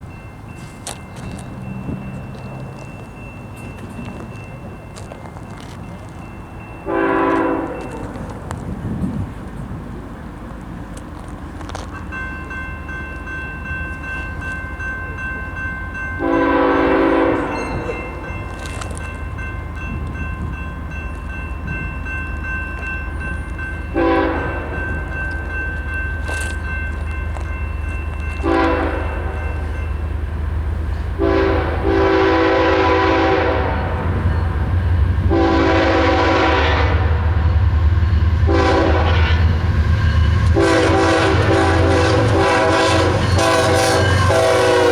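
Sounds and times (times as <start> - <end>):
diesel locomotive rumble: 0.0 - 44.9
locomotive air horn blasts: 6.9 - 8.1, 16.2 - 17.9, 24.0 - 24.7, 28.4 - 29.4, 31.2 - 34.2, 35.2 - 37.5, 38.5 - 39.6, 40.4 - 44.9.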